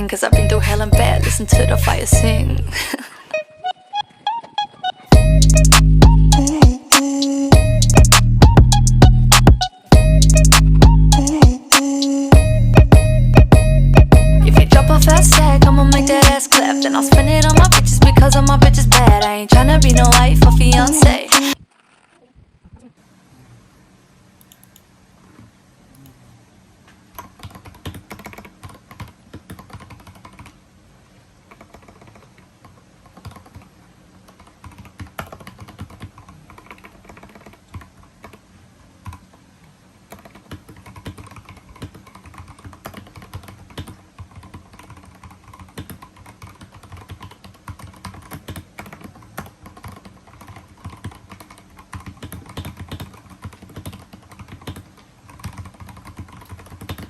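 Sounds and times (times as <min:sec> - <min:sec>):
mechanical keyboard typing: 0:27.1 - 0:30.6, 0:31.5 - 0:33.7, 0:34.3 - 0:38.4, 0:39.0 - 0:39.4, 0:40.1 - 0:57.0.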